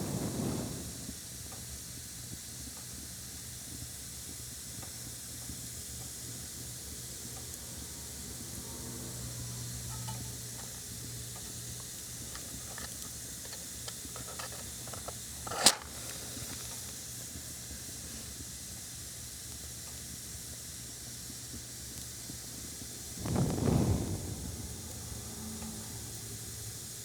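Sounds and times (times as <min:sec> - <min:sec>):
breath blowing out match: 0:00.0 - 0:01.2, 0:23.1 - 0:26.1
match struck: 0:00.0 - 0:01.2, 0:11.4 - 0:17.2, 0:23.1 - 0:25.0
faint steady hiss: 0:00.0 - 0:27.0.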